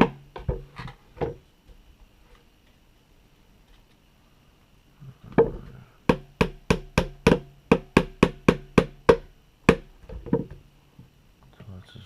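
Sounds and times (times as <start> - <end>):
hammer tapping metal punch: 6.1 - 9.9.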